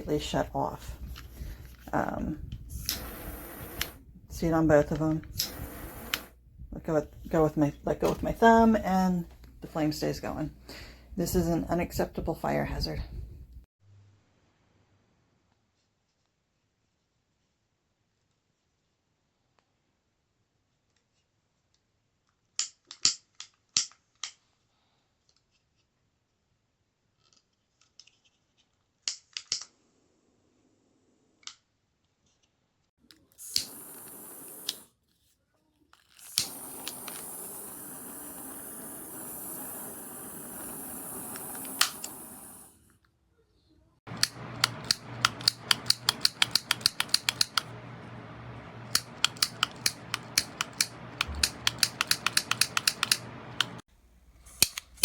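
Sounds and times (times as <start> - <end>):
torch flame hissing: 0.8 - 6.4, 33.4 - 34.9, 36.2 - 42.8, 44.1 - 53.9
torch igniter clicks: 2.4 - 4.0, 4.9 - 6.4, 33.4 - 34.9, 36.2 - 42.7, 44.1 - 53.8, 54.5 - 55.0.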